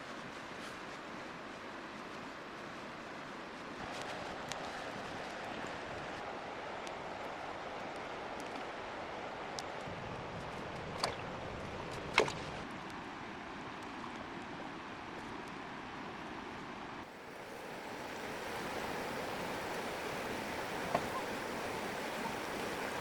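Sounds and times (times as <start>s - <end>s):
flowing water rushing: 17.0s - 23.0s.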